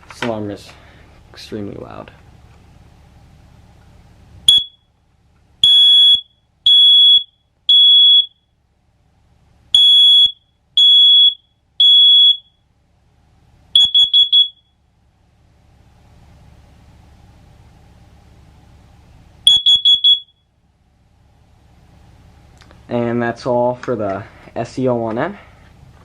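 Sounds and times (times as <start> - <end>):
smoke alarm beeping: 4.5 - 4.9, 5.6 - 8.5, 9.7 - 12.7, 13.8 - 14.8, 19.4 - 20.5
smoke alarm chirps: 4.5 - 5.0, 5.6 - 8.5, 9.7 - 12.7, 13.8 - 14.8, 19.4 - 20.5.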